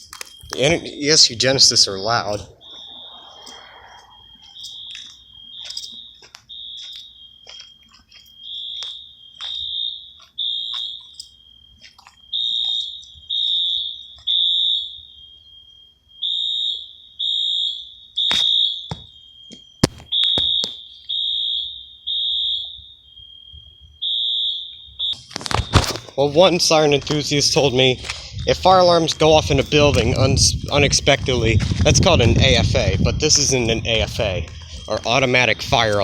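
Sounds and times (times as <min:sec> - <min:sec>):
fire alarm horn blasts: 0:00.0 - 0:36.0
sharp knocks: 0:18.3 - 0:19.1.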